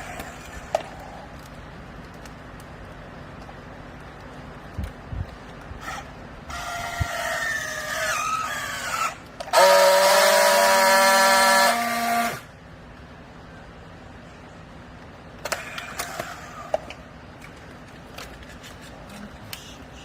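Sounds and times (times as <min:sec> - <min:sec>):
machine whine: 0:05.8 - 0:12.6.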